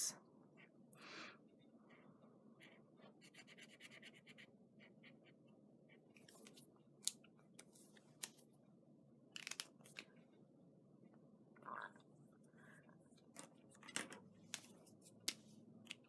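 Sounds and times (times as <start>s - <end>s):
marker scratching on card: 3.2s - 5.4s.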